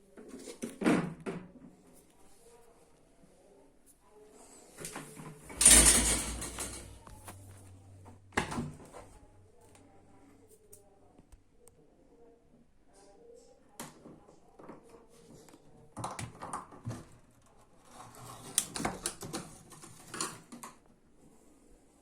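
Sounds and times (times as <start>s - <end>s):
tools clicking and rattling: 5.5s - 7.3s.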